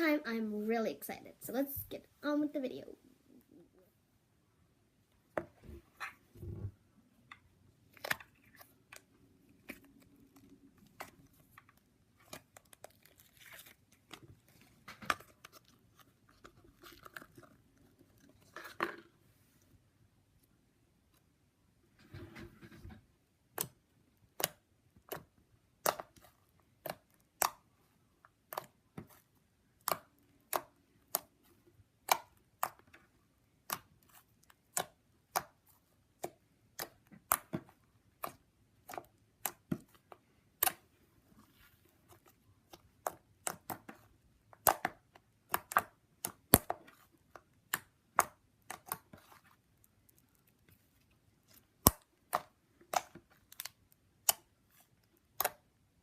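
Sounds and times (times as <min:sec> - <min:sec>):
slime clicking and popping: 0:23.5 - 0:27.7, 0:42.8 - 0:49.3, 0:51.5 - 0:55.8.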